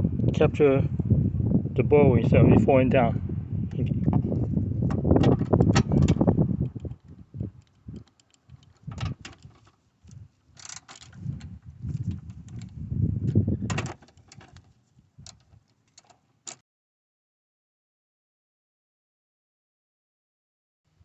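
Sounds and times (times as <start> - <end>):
socket wrench clicking: 5.5 - 9.5.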